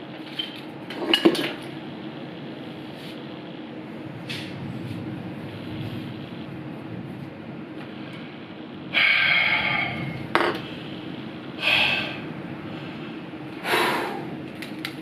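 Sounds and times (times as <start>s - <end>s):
steady low hum: 0.0s - 15.0s
person breathing: 7.9s - 14.4s.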